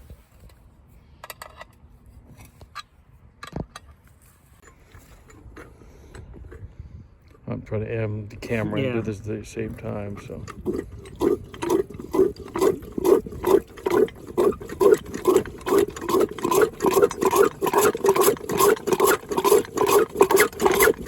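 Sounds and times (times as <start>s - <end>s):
hand pump squeaking and sucking: 9.0s - 21.0s.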